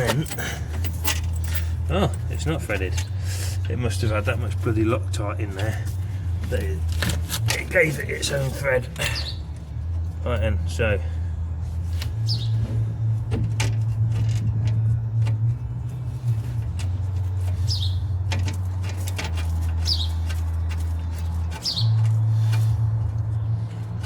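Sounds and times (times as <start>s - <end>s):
low steady rumble: 0.0s - 24.0s
small bird chirping: 12.2s - 12.6s, 17.6s - 18.1s, 19.8s - 20.3s, 21.6s - 22.3s.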